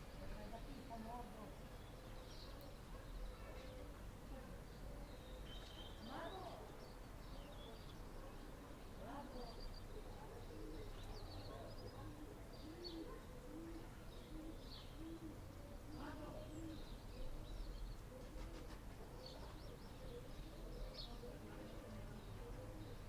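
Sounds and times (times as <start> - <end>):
small birds chirping: 0.0 - 23.0
dove cooing: 9.9 - 23.0.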